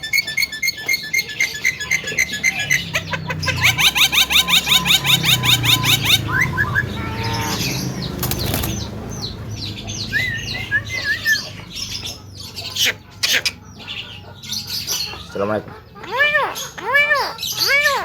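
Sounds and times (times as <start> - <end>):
bird chirping and chattering: 0.0 - 18.0
wings flapping: 7.0 - 9.1.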